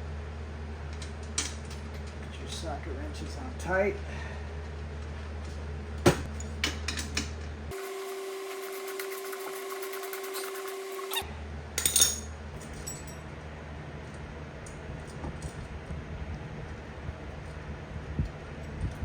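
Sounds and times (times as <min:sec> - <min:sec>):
power tool whining with ticking: 0:07.7 - 0:11.2.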